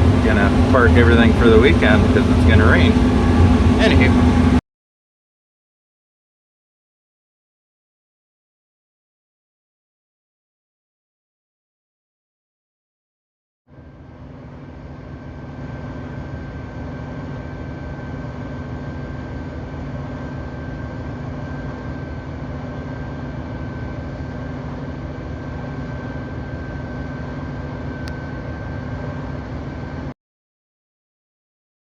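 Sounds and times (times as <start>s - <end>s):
combine harvester hum: 0.0s - 4.6s, 14.1s - 30.1s
thin steady whine: 0.0s - 4.6s, 13.8s - 30.2s.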